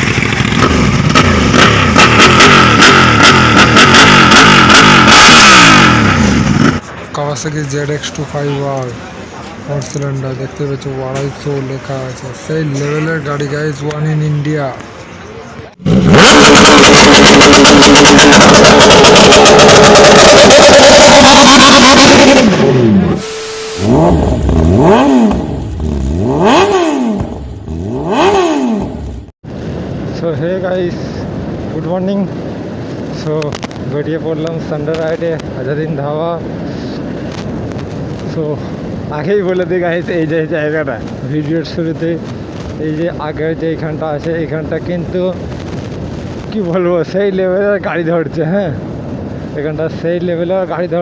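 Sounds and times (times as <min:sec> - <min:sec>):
motorcycle engine revving: 0:00.0 - 0:06.9, 0:15.8 - 0:29.3.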